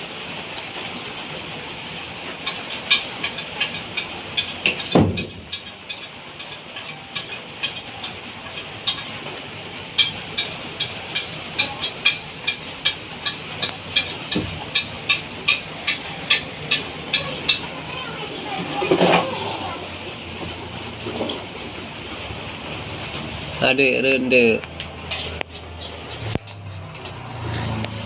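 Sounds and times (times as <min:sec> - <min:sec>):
rain hiss: 0:00.0 - 0:04.7.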